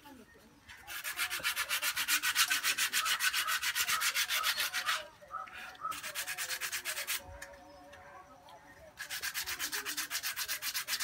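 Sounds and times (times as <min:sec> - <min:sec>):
sandpaper scrubbing metal: 0:00.8 - 0:07.3, 0:09.0 - 0:11.0.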